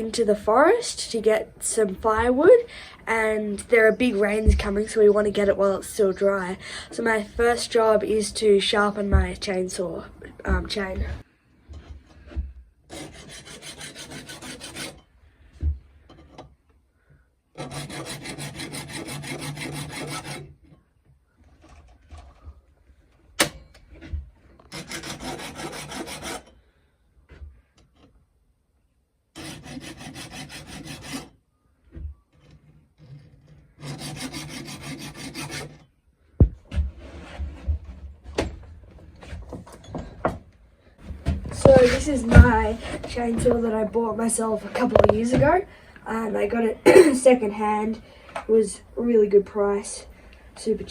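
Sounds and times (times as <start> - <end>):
file rasping on chain teeth: 12.9 - 15.1, 17.6 - 20.6, 24.6 - 26.6, 29.4 - 31.4, 33.0 - 35.9.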